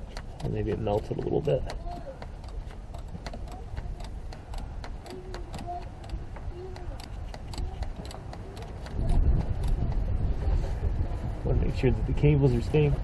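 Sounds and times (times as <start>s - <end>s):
tools clicking and tapping: 0.0s - 10.0s.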